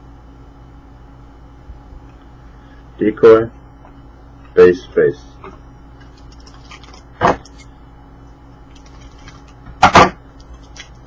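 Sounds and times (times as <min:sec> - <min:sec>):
cards and wrappers rustling: 0:06.0 - 0:07.7, 0:08.7 - 0:09.7, 0:10.4 - 0:11.0.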